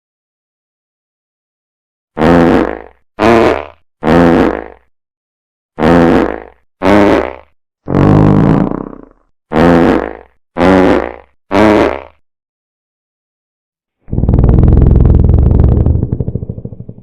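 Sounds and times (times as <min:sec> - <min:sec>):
fart sound effects: 0:02.2 - 0:04.9, 0:05.8 - 0:12.2, 0:14.0 - 0:16.6.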